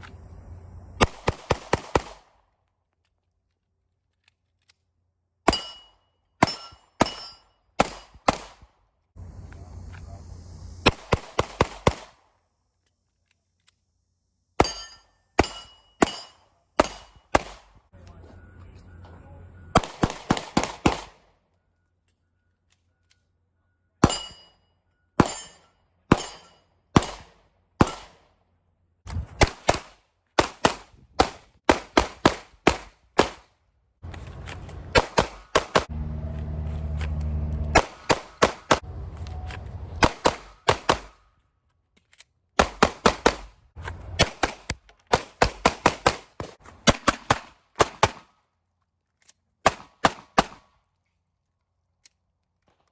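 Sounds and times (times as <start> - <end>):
handgun shots: 5.5 - 8.7, 14.6 - 17.7, 19.8 - 21.2, 25.2 - 28.2, 29.4 - 33.4, 34.9 - 35.9, 37.6 - 38.9, 40.0 - 41.2.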